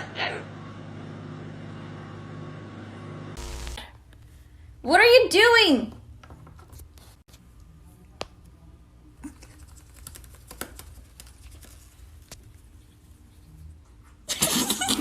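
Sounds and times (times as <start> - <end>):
low hum: 0.6 - 3.9.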